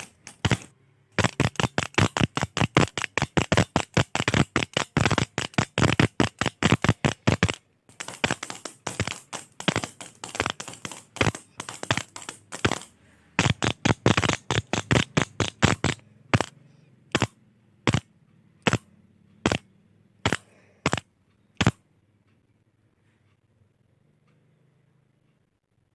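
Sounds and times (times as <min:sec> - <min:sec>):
ballpoint pen clicking: 0:00.0 - 0:19.6, 0:20.2 - 0:21.0.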